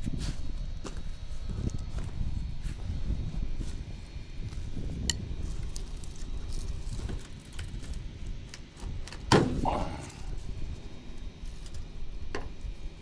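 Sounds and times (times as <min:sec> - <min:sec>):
handling and rustling noise: 0:03.6 - 0:12.7.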